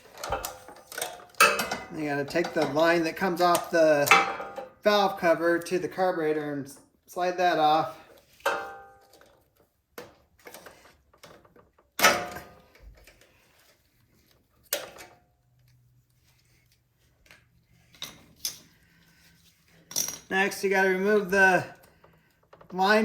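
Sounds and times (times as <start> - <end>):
tools clicking and knocking: 0.0 - 4.8, 17.2 - 18.8, 19.8 - 20.4.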